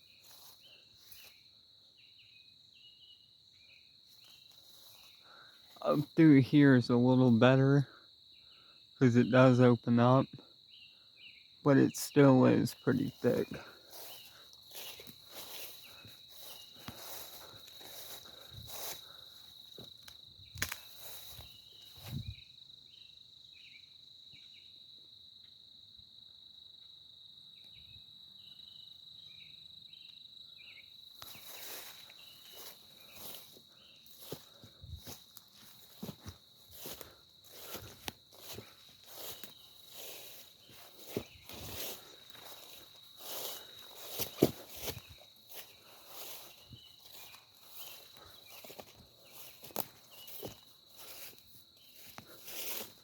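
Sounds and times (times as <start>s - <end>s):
short insect chirps: 10.7s - 24.8s, 27.6s - 53.0s
faint footsteps: 12.7s - 22.3s, 31.2s - 53.0s
high-pitched insect drone: 31.3s - 53.0s.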